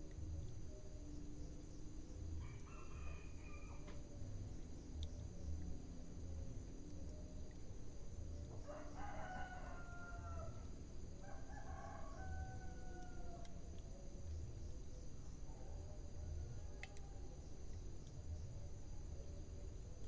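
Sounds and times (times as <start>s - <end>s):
wood fire crackling noise: 0.0s - 20.0s
rooster crowing: 2.4s - 4.0s, 8.6s - 13.5s.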